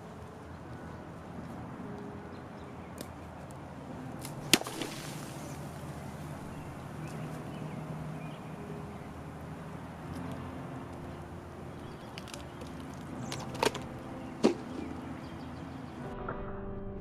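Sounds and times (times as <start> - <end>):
low background hum: 0.0 - 16.1
sharp crack: 3.0 - 7.4, 11.8 - 15.4.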